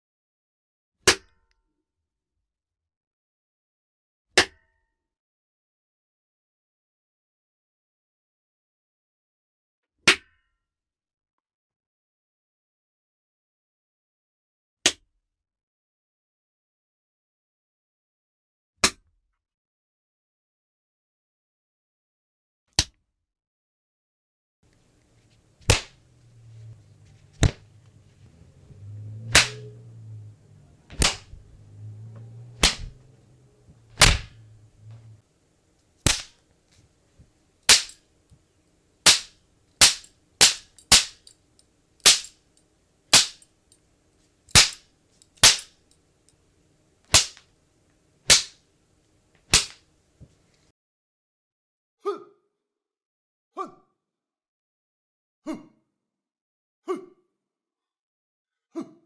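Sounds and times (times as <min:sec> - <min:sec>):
low hum: 0:25.1 - 0:35.2
punch and slap hit effects: 0:25.7 - 0:25.9, 0:32.6 - 0:32.9, 0:34.0 - 0:34.4, 0:36.1 - 0:36.3, 0:49.5 - 0:49.8.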